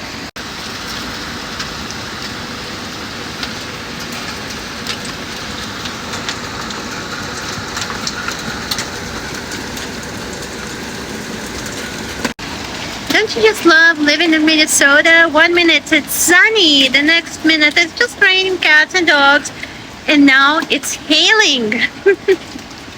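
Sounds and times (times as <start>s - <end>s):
rain hissing: 0.0s - 22.9s
hailstones ticking on hard surfaces: 0.4s - 14.7s.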